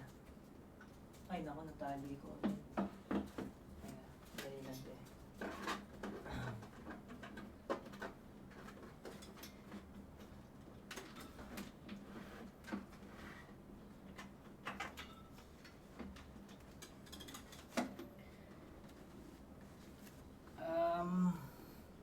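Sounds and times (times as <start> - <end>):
faint steady hum: 8.6 - 22.0.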